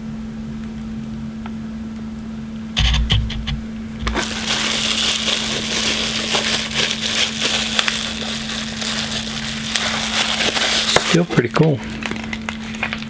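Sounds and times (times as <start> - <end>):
low hum: 2.0 - 5.9
plastic packaging crinkling: 4.0 - 13.0.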